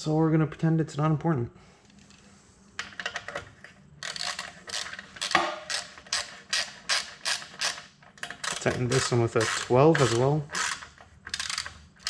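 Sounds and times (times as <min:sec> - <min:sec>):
ratchet wrench clicking: 0:04.0 - 0:12.0.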